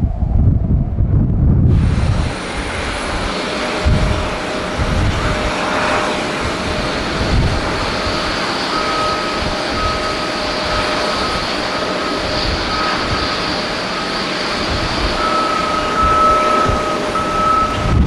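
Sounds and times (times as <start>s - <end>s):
jet engines roaring: 0.0s - 18.0s
thin high whine: 7.0s - 18.0s.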